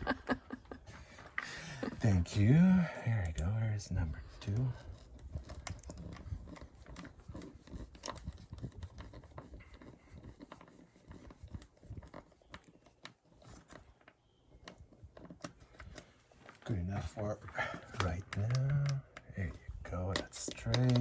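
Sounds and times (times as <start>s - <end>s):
screwdriver clicks and scrapes: 4.4s - 16.6s, 17.7s - 21.0s.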